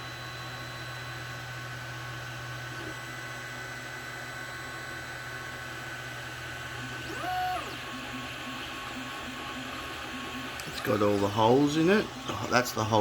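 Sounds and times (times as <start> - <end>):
printer humming with whine: 0.0 - 13.0
stepper motor move: 6.6 - 13.0.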